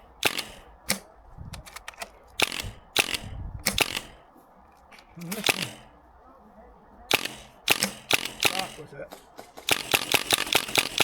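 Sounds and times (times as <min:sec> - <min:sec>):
airsoft gun shots: 0:00.0 - 0:04.3, 0:04.9 - 0:06.0, 0:07.1 - 0:11.0
faint clicks: 0:00.0 - 0:06.2.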